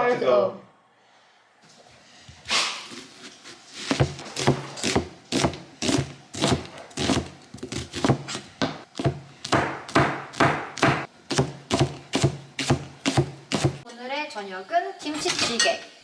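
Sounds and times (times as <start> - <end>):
knife chopping on cutting board: 3.9 - 13.8.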